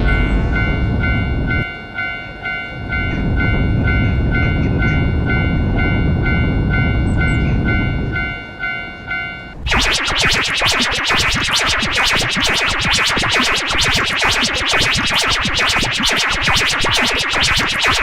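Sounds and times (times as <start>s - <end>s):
level-crossing warning bell: 0.0s - 9.6s.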